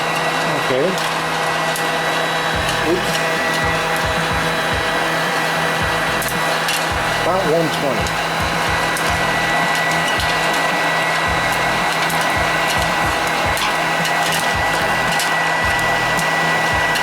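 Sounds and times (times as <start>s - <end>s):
popcorn popper blowing: 0.0s - 17.0s.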